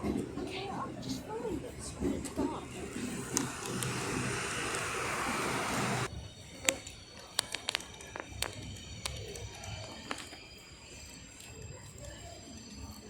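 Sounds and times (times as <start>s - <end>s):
train rushing past platform: 0.0s - 6.1s.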